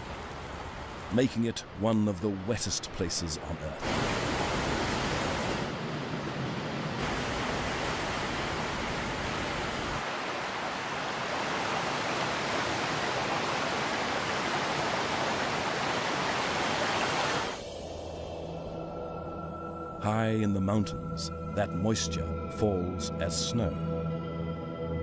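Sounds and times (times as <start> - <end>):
heavy falling water rushing: 7.0 - 17.7.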